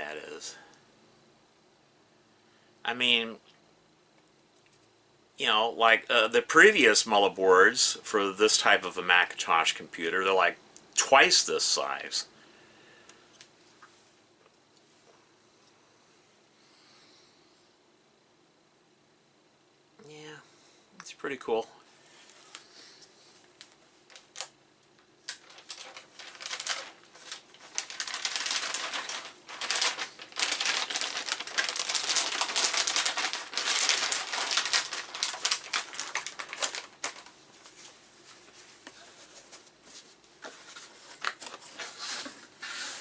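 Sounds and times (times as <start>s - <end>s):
packaging crinkling and rustling: 23.4s - 43.0s.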